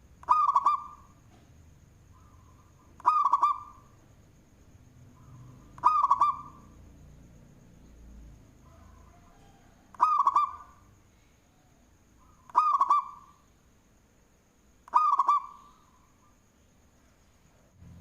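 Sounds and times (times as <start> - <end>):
dove cooing: 0.2 - 1.3, 2.1 - 3.9, 5.2 - 6.8, 8.6 - 10.9, 12.2 - 13.4, 14.9 - 16.1.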